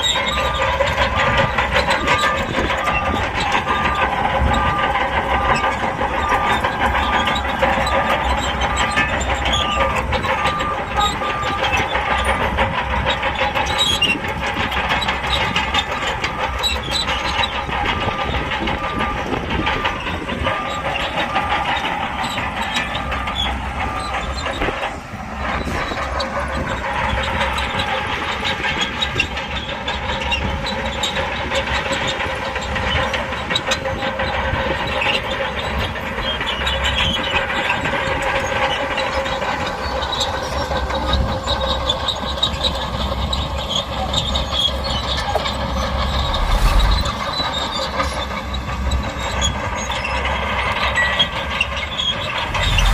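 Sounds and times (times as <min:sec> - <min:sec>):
bulldozer diesel engine whining: 0:00.0 - 0:52.9.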